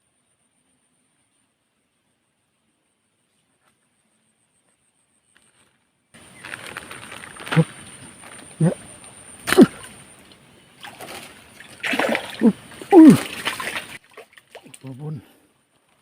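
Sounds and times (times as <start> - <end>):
fish splashing in water: 10.8 - 14.8.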